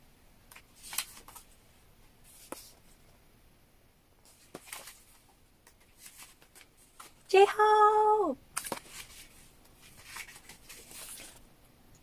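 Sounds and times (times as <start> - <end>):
paper cards rustling: 0.5 - 1.6, 2.2 - 3.0, 4.3 - 7.3, 8.5 - 11.5.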